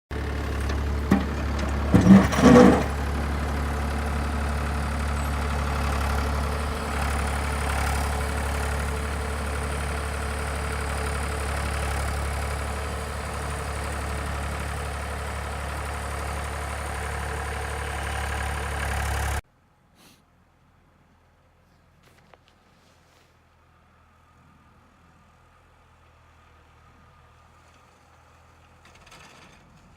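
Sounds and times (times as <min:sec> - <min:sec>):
skid steer diesel engine running: 0:00.1 - 0:19.4.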